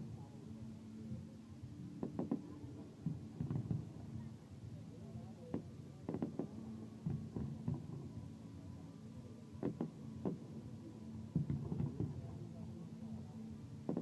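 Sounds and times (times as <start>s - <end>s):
distant fireworks bursts: 2.0s - 4.0s, 5.6s - 8.1s.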